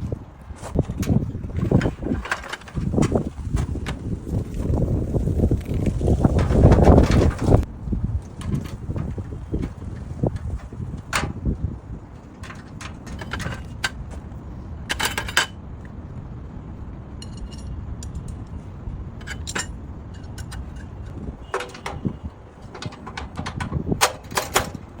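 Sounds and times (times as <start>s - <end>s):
wind rumble on microphone: 0.0s - 25.0s
metal parts clinking: 8.4s - 11.5s, 12.2s - 14.2s, 14.9s - 15.6s, 17.2s - 18.5s, 19.2s - 24.8s.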